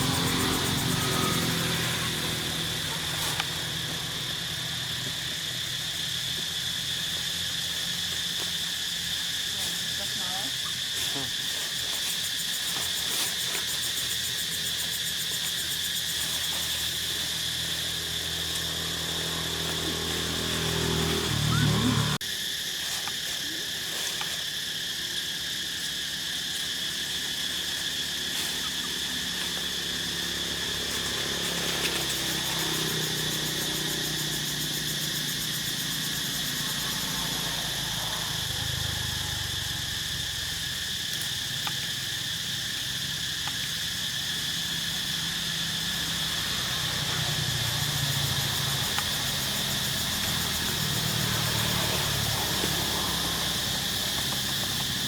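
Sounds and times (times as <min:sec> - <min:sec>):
high-pitched insect drone: 0:00.0 - 0:55.0
low motor hum: 0:17.6 - 0:22.2.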